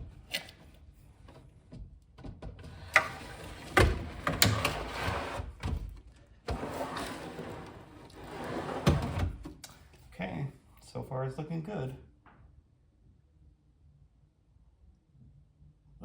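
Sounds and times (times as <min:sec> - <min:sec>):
drawer sliding: 0:02.7 - 0:05.9, 0:06.5 - 0:09.5.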